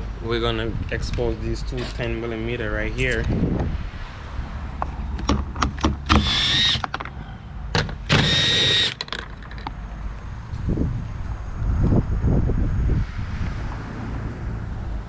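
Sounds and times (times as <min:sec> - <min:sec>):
small electric motor whining: 0:06.1 - 0:06.8, 0:08.1 - 0:09.0.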